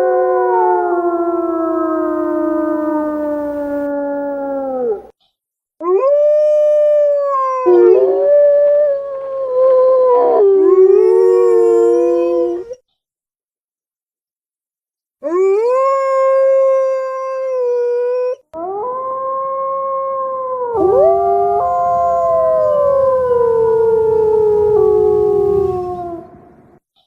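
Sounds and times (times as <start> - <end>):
wolf howling: 0.0 - 5.1, 5.9 - 12.8, 15.3 - 26.7
low rough noise: 20.8 - 26.8.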